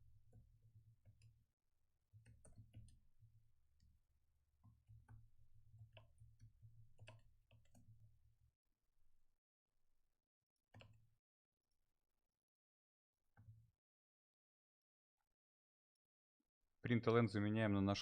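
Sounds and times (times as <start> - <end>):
faint keyboard typing clicks: 2.2 - 3.0, 4.9 - 8.1, 10.7 - 11.0.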